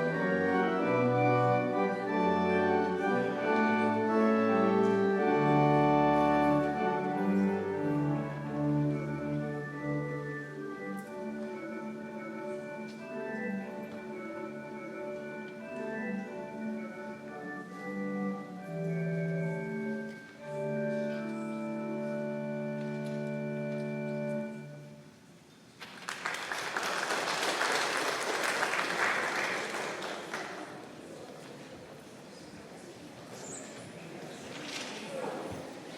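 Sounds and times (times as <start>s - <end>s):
organ music: 0.0s - 25.4s
congregation applauding: 25.8s - 31.3s.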